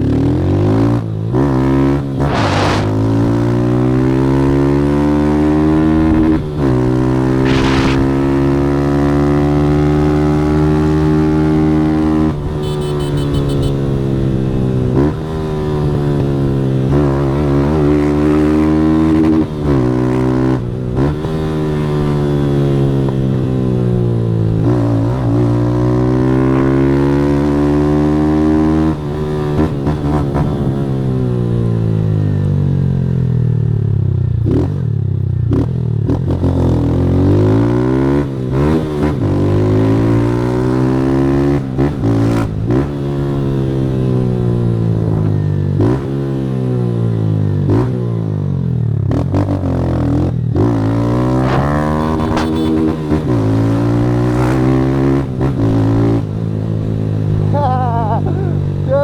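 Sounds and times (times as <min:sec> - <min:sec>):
motorcycle engine revving: 0:00.0 - 0:59.0
brief sharp noises: 0:02.2 - 0:03.3, 0:07.4 - 0:08.4.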